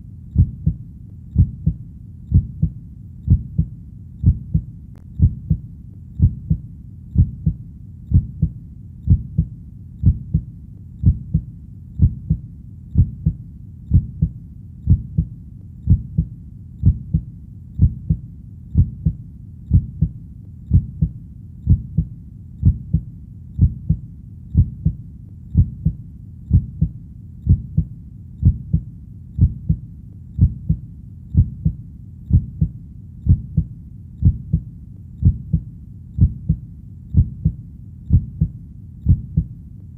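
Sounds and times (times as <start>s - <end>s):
heartbeat double thump: 0.4s - 0.8s, 1.4s - 5.6s, 6.2s - 6.6s, 7.2s - 12.4s, 13.0s - 15.3s, 15.9s - 18.2s, 18.8s - 21.1s, 21.7s - 24.0s, 24.6s - 25.0s, 25.6s - 28.8s, 29.4s - 29.8s, 30.4s - 30.8s, 31.4s - 32.7s, 33.3s - 35.6s, 36.2s - 36.6s, 37.2s - 38.5s, 39.1s - 39.5s.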